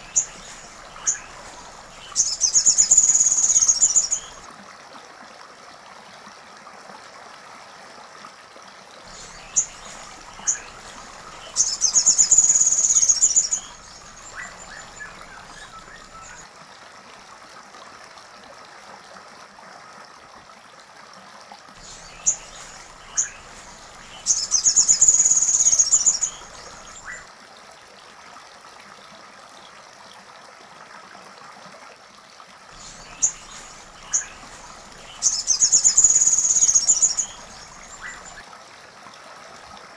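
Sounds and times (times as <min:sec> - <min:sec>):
small chirps and insects: 0:00.0 - 0:04.5, 0:09.1 - 0:16.4, 0:21.8 - 0:27.3, 0:32.7 - 0:38.4.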